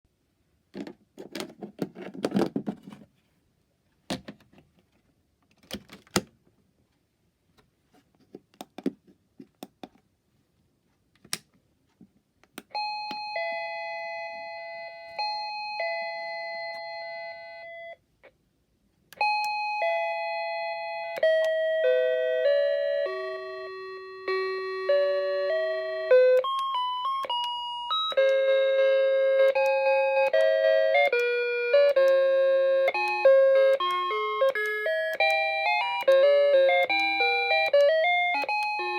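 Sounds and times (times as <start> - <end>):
doorbell playing a tune: 12.7 - 18.0, 19.2 - 38.9
electronic doorbell chime: 12.7 - 18.0, 19.2 - 38.9.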